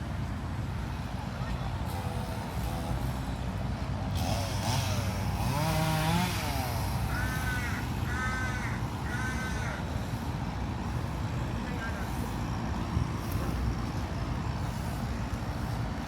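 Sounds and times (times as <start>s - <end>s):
city traffic rumble: 0.0s - 16.0s
crow cawing: 7.1s - 9.8s.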